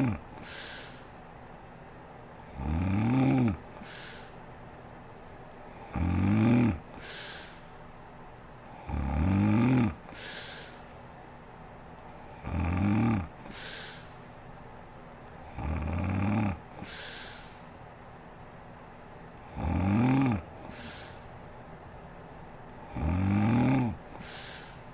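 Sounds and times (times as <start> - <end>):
woman snoring: 0.0 - 1.0, 2.5 - 4.4, 5.8 - 7.6, 8.7 - 10.8, 12.3 - 14.1, 15.4 - 17.6, 19.4 - 21.3, 22.8 - 24.9.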